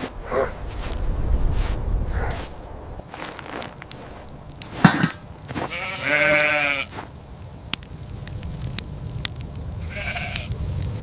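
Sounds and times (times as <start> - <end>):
sheep bleating: 5.6 - 7.0, 9.8 - 10.5.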